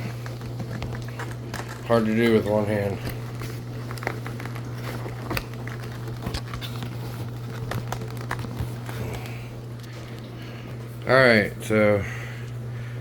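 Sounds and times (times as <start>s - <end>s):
packaging clicks and rustles: 0.0s - 10.4s
steady low hum: 0.0s - 13.0s.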